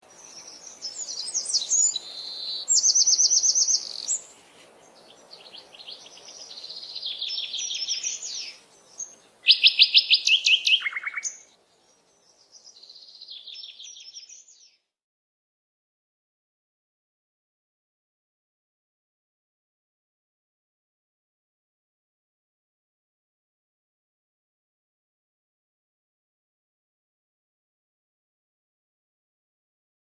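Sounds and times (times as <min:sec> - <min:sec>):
songbirds trilling and chirping: 0:00.0 - 0:14.9.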